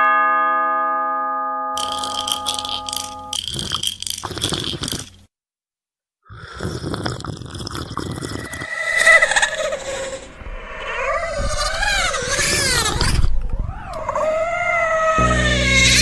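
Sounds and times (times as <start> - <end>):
bell chime: 0.0 - 3.4
rhythmic scraping and crunching: 1.8 - 5.2
harsh noise with moaning tones: 8.6 - 16.0.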